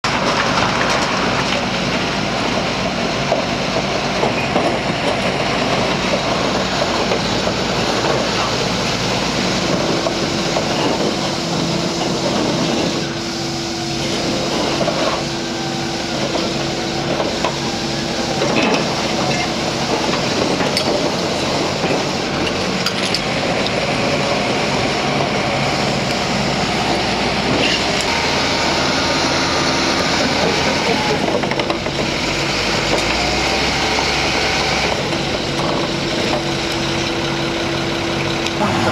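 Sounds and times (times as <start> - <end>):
diesel engine under load: 0.0 - 38.9
crawler tracks clattering: 0.1 - 13.2, 14.0 - 28.4.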